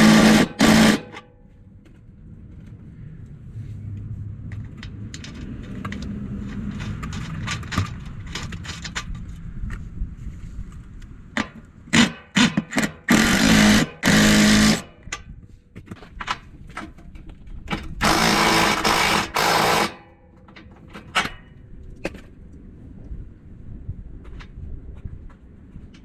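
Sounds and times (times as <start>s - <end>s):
cordless power driver spinning: 18.0s - 20.0s.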